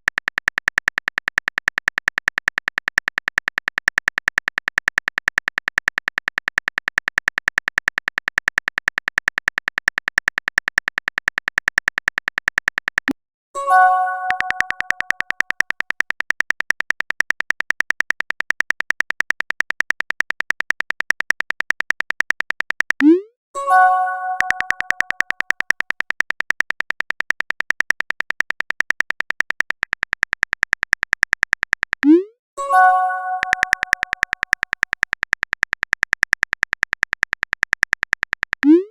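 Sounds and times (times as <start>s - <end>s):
keyboard typing clicks: 0.0s - 38.9s
message notification chime: 13.6s - 14.6s.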